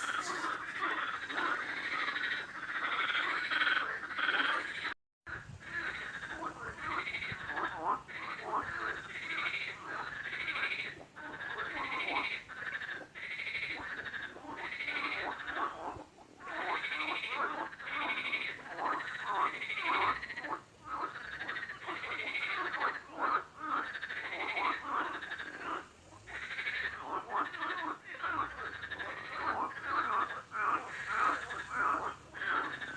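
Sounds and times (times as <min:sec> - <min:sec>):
frogs croaking: 0:00.0 - 0:32.9.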